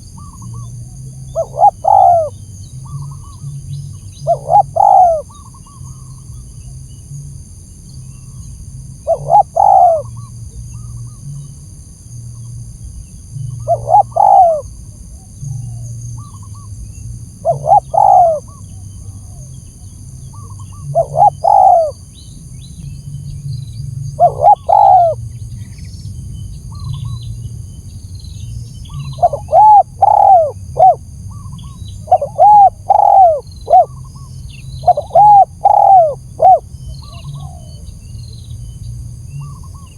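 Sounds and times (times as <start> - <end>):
dove cooing: 0.2 - 5.8, 9.0 - 10.3, 13.4 - 14.8, 17.3 - 19.5, 20.3 - 22.0, 24.1 - 25.2, 28.8 - 38.0.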